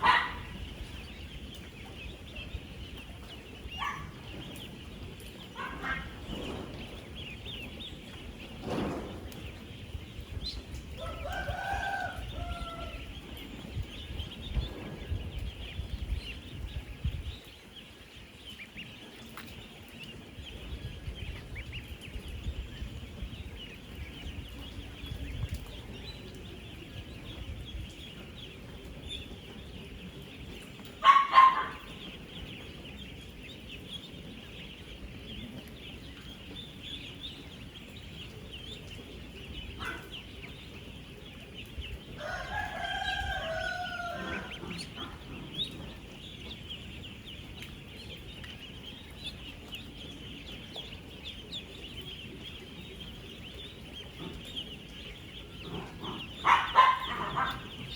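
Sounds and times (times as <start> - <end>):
ducklings peeping: 0.0 - 57.9.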